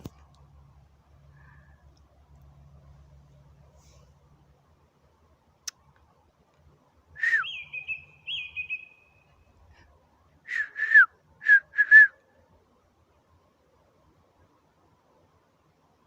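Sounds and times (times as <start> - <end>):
songbird whistling: 7.2 - 9.3, 10.5 - 12.2.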